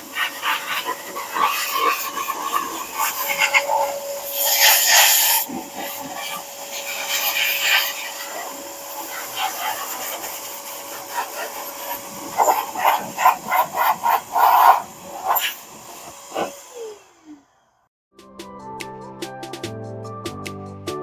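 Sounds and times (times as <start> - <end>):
electric air blower: 0.0 - 17.8
music: 18.1 - 21.0.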